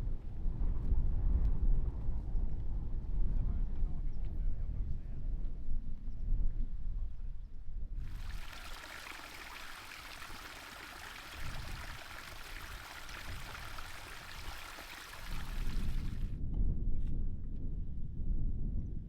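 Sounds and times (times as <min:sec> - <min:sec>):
stream water rushing: 0:08.1 - 0:16.3.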